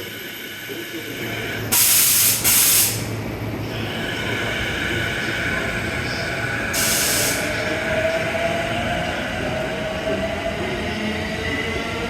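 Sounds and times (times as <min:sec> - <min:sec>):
air hissing burst: 0:01.7 - 0:03.1, 0:06.8 - 0:07.5.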